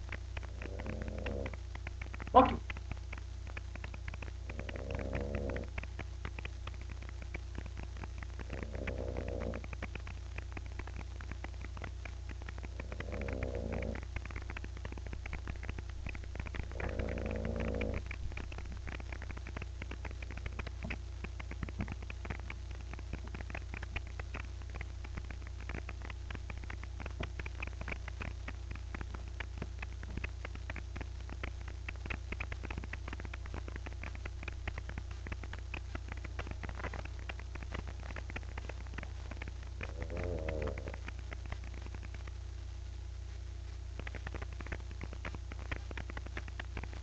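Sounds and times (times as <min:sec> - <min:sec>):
faint crackling rattle: 0:00.0 - 0:47.0
steady low hum: 0:00.0 - 0:47.0
dog snoring: 0:00.4 - 0:01.6, 0:04.4 - 0:05.8, 0:08.4 - 0:09.8, 0:12.7 - 0:14.1, 0:16.6 - 0:18.5, 0:39.8 - 0:41.1.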